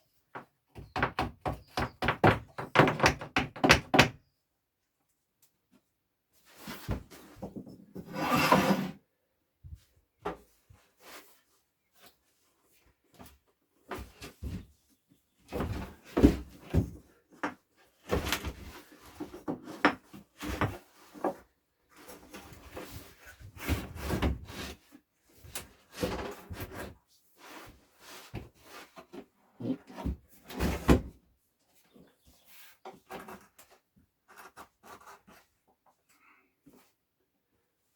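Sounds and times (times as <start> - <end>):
knocks and bumps of wood: 0.3 - 4.2.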